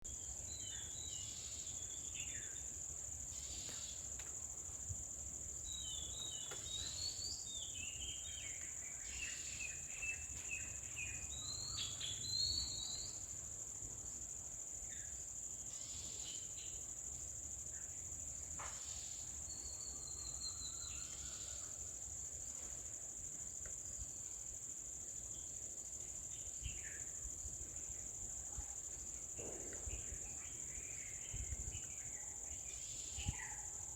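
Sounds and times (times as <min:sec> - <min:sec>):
chirps and twittering calls: 0:00.2 - 0:04.0, 0:05.6 - 0:13.3, 0:18.8 - 0:22.0, 0:29.4 - 0:33.9.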